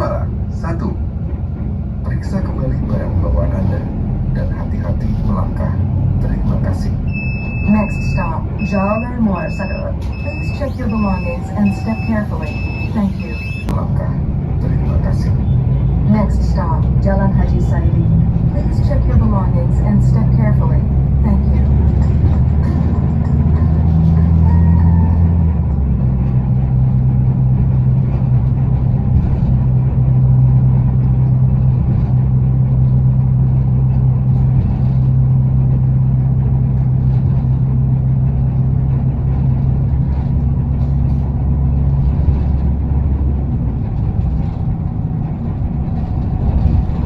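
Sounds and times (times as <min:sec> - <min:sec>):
bus drivetrain drone: 0:00.0 - 0:47.0
road noise: 0:00.0 - 0:47.0.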